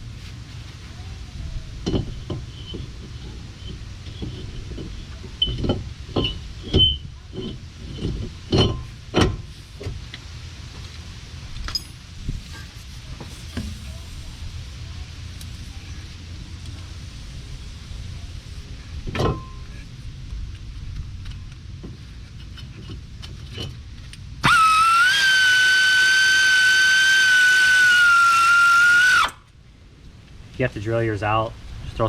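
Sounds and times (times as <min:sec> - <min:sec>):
metal brake parts clunking: 0:01.8 - 0:09.9.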